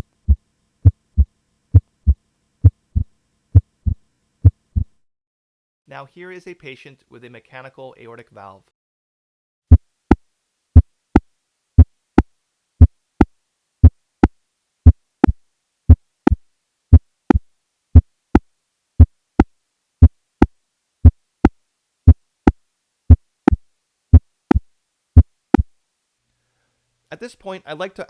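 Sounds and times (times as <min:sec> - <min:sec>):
clicking heartbeat: 0:00.0 - 0:05.0, 0:13.8 - 0:17.4, 0:21.0 - 0:23.6.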